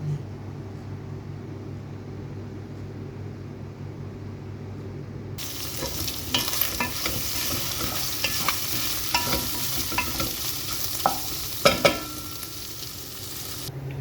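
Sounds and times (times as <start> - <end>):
food sizzling in a hot pan: 5.4 - 13.7
spatula scraping a pan: 5.4 - 13.7.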